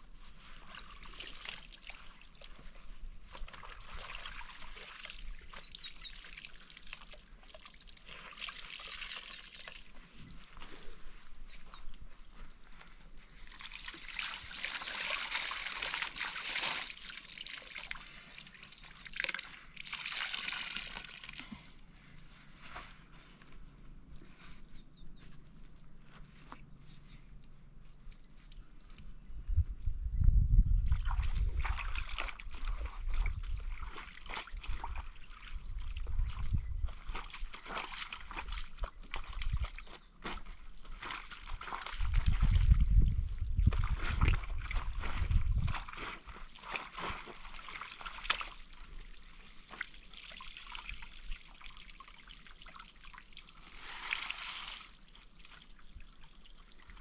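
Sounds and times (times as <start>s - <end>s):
water sloshing and trickling: 0.2s - 29.3s, 30.8s - 57.0s
small water splashes: 0.4s - 11.8s, 12.8s - 21.9s, 30.8s - 57.0s.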